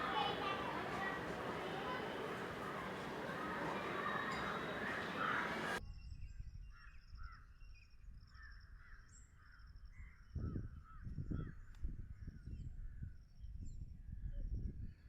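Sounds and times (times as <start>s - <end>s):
birds calling: 0.0s - 5.8s
high pulsing bird trill: 0.0s - 5.8s.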